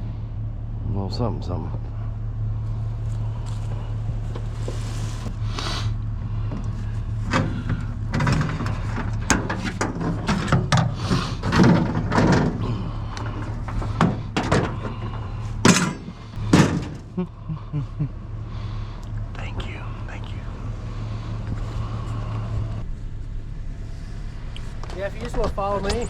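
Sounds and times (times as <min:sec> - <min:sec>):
vehicle engine idling: 0:00.0 - 0:26.0
knocks and clunks: 0:06.4 - 0:17.2, 0:24.6 - 0:26.0.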